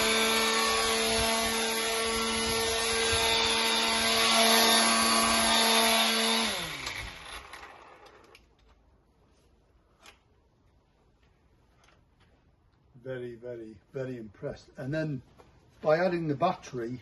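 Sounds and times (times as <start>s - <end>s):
cordless strimmer running: 0.0s - 8.5s.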